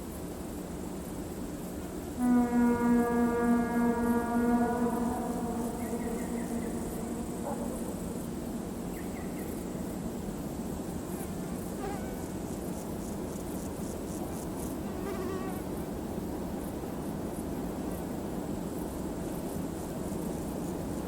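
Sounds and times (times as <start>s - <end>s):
freight train rumbling past: 1.7s - 14.9s.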